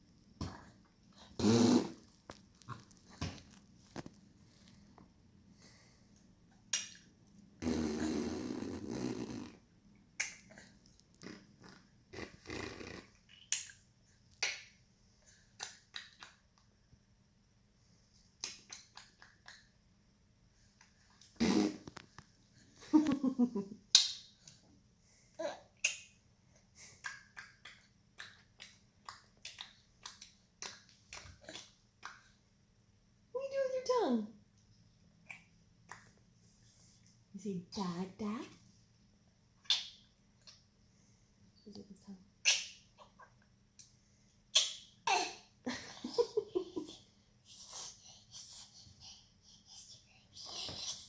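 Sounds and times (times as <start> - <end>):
baby tongue clicks and smacks: 10.2 - 11.8, 18.4 - 19.7, 27.0 - 32.3.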